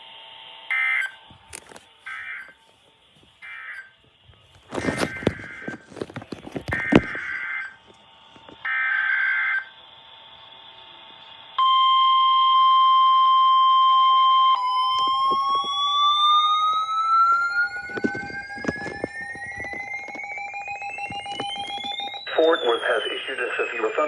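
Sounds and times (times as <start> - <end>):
steady warning alarm tone: 0.0 - 24.0
warbling digital data burst: 15.1 - 24.0.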